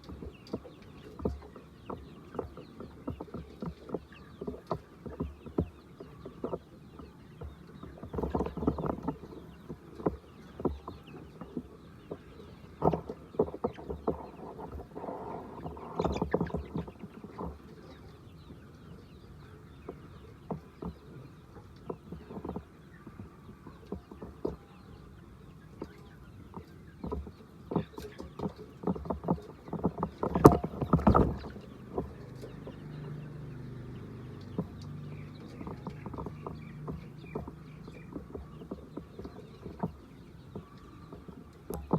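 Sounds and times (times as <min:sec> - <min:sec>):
hens clucking: 0:00.0 - 0:41.9
sharp knocks and clatters: 0:25.8 - 0:33.6, 0:34.4 - 0:41.9.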